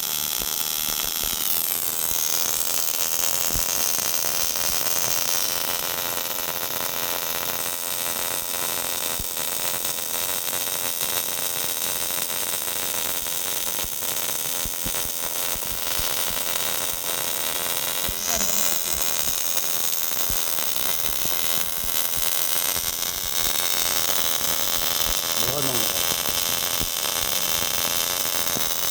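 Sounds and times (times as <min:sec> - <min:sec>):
welding arc hissing crackle: 0:00.0 - 0:28.9.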